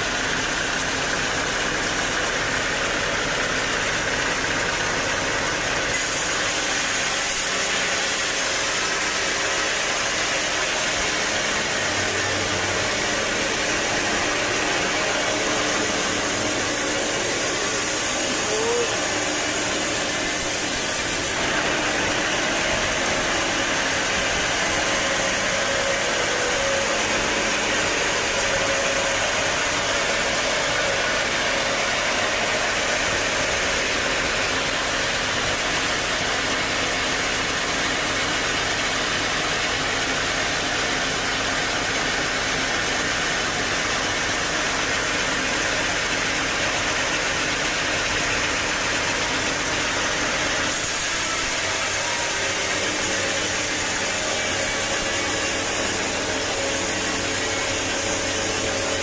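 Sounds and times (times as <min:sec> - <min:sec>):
sawmill machine drone: 0:00.0 - 0:59.0.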